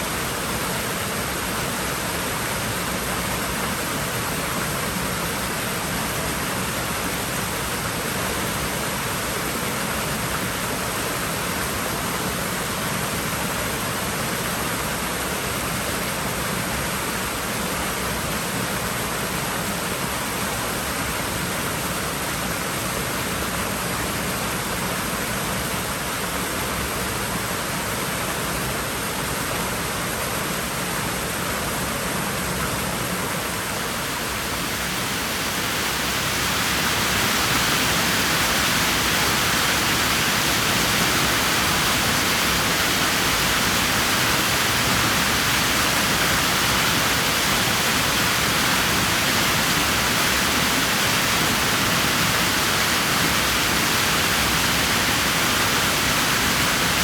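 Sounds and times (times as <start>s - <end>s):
water rushing in pool: 31.3s - 57.0s.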